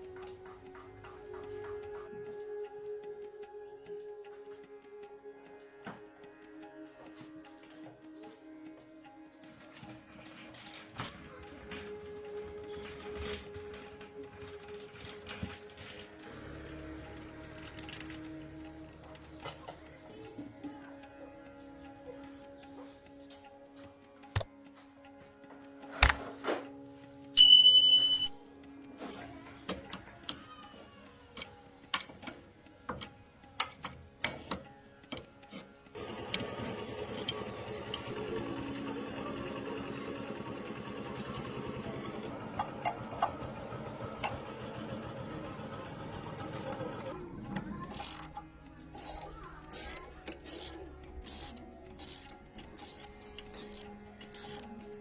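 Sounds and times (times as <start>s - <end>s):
mechanical clatter: 36.0s - 54.9s.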